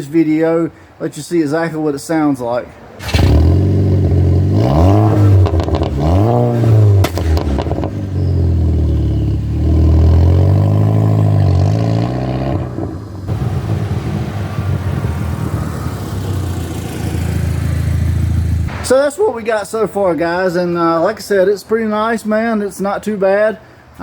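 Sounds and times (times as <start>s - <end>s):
car engine revving: 3.0s - 18.8s.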